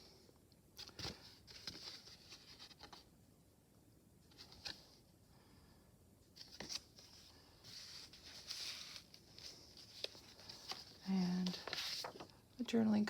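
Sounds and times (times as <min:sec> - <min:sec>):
paper rustling and ticking: 0:08.3 - 0:12.4.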